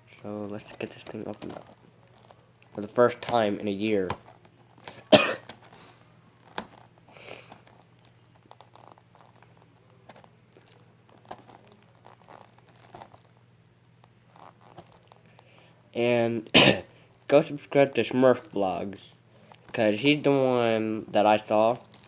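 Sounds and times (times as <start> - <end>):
shrink wrap crinkling: 0.2 - 15.8, 16.9 - 22.0
person coughing: 5.1 - 5.4, 16.5 - 16.9.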